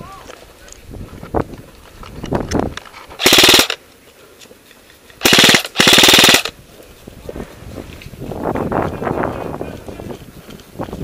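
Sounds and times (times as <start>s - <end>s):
airsoft rifle full-auto bursts: 3.2s - 3.8s, 5.2s - 6.5s.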